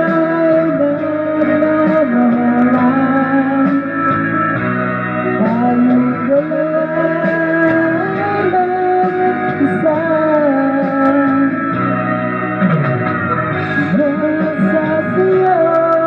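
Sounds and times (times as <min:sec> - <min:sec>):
gliding lead melody: 0:00.0 - 0:16.0
guitar accompaniment: 0:00.0 - 0:16.0.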